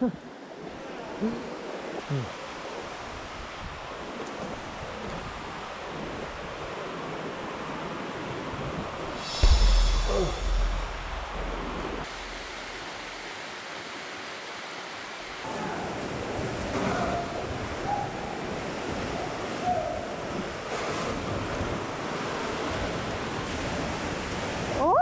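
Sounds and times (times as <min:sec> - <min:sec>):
waterfall rushing: 0:09.1 - 0:16.2.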